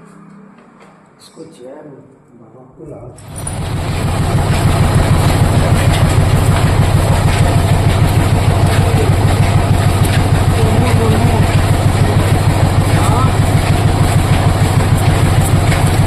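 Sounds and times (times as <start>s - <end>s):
machine running with pulsing beat: 3.2s - 16.0s.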